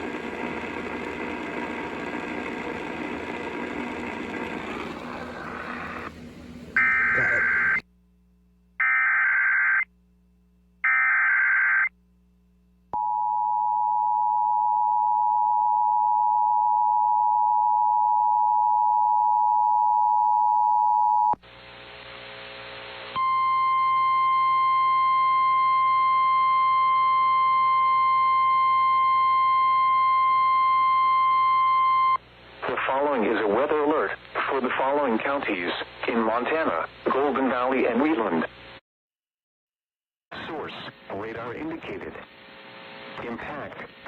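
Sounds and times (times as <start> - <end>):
buzzy data bursts: 0.0 - 7.8
radio static hiss: 0.0 - 7.8, 32.4 - 38.8, 40.3 - 44.0
steady alert tone: 3.1 - 7.8
two-tone attention signal: 6.8 - 7.8.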